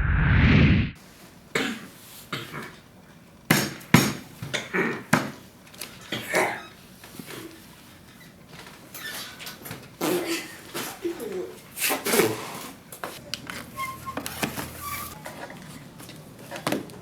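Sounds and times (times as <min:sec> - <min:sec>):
loud rushing sound: 0:00.0 - 0:01.0.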